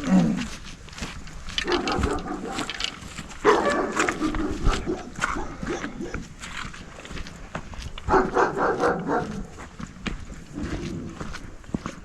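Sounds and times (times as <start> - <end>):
dog barking: 1.6 - 2.7, 3.4 - 6.3, 8.1 - 9.6.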